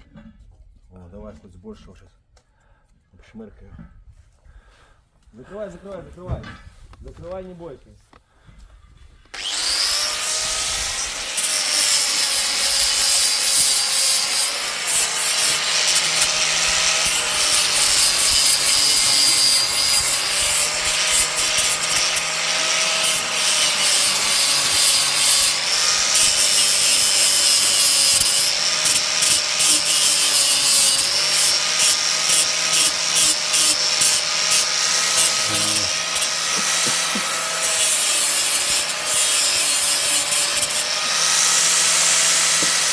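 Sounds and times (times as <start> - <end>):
angle grinder sanding wood: 9.4 - 42.9.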